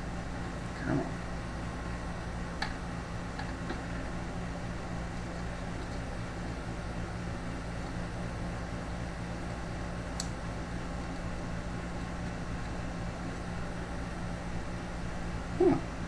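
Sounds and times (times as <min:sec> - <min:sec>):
low electrical hum with hiss: 0:00.0 - 0:16.0
small sharp click: 0:10.2 - 0:10.4.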